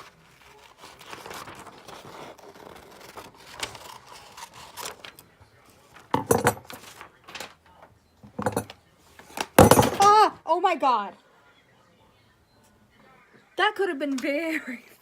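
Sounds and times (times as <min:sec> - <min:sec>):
clatter of objects: 0:06.0 - 0:07.6, 0:08.2 - 0:08.8, 0:09.4 - 0:10.1.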